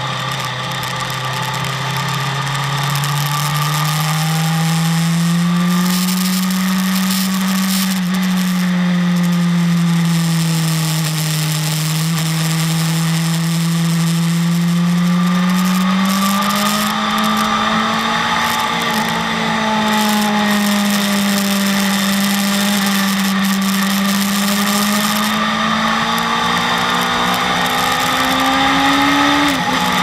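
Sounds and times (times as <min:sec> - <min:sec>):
motorcycle engine running: 0:00.0 - 0:30.0.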